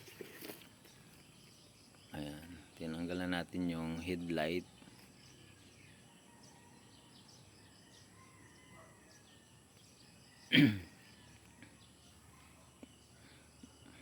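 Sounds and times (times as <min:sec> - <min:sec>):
faint bird chirps: 0:00.0 - 0:14.0.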